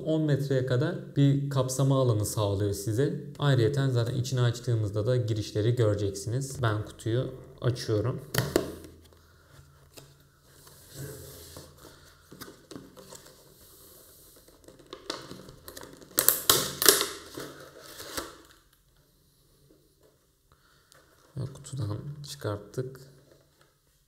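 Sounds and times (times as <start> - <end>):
cardboard rustling and scraping: 9.6 - 16.2.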